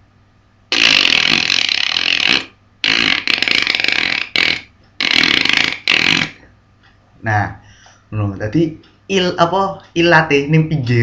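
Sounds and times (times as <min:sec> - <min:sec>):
beatbox rasping mouth sound: 0:00.7 - 0:06.5.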